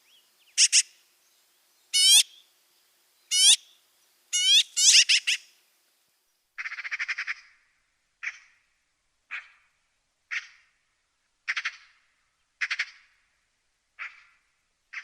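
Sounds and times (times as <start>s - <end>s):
magpie squawking and chattering: 0.6s - 0.9s, 2.0s - 2.3s, 3.3s - 3.6s, 4.4s - 5.4s.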